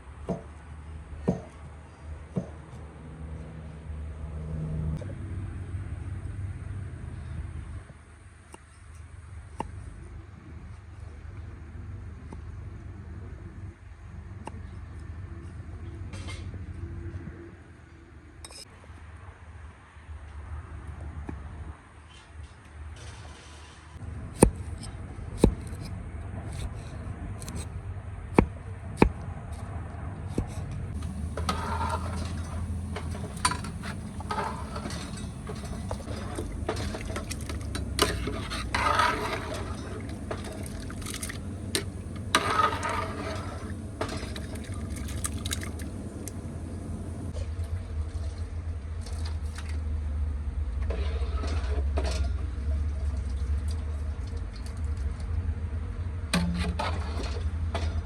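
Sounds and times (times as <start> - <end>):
scraping or liquid noise: 31.0 - 47.4
steady low rumble: 31.0 - 47.4.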